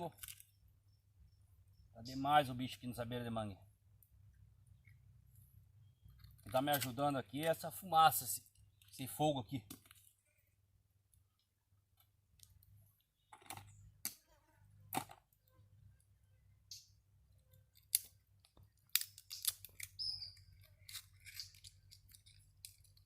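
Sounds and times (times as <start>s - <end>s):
faint high chirp: 4.7s - 6.4s, 20.0s - 20.7s.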